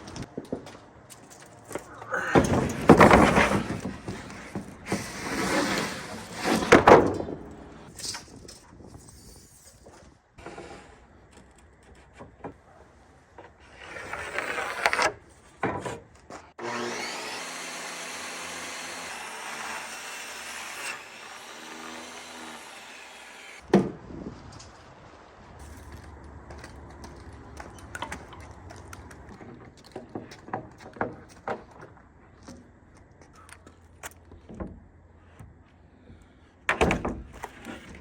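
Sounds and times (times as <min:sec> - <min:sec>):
wood panels scraping and rubbing: 0:01.7 - 0:16.6, 0:36.7 - 0:38.0.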